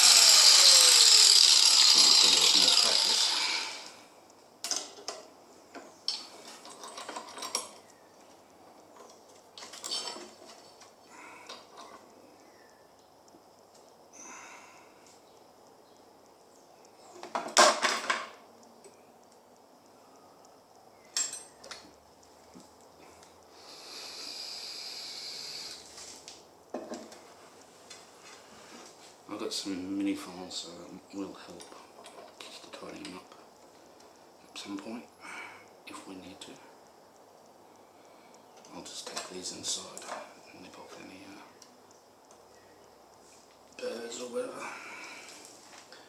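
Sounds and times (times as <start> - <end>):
steady hiss: 0.0 - 46.0
metal parts clicking and clinking: 6.1 - 7.8, 9.0 - 10.9.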